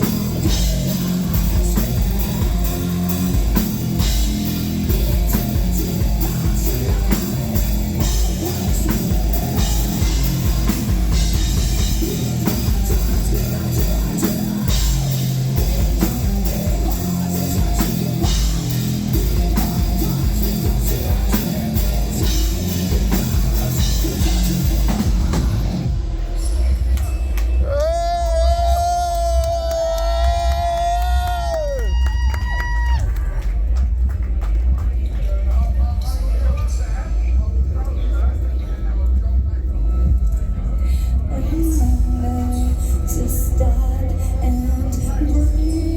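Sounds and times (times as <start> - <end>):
pounding drums: 0.0 - 27.6
cymbals: 0.0 - 29.4
distorted guitars: 0.0 - 31.6
metal band playing live: 0.0 - 31.6.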